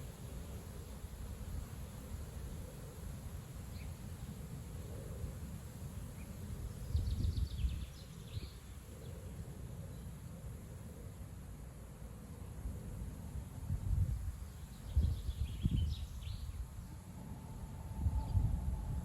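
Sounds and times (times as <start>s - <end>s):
strong wind on microphone: 6.8s - 8.5s, 13.7s - 19.0s
faint high bird chirps: 14.6s - 17.0s, 17.6s - 19.0s.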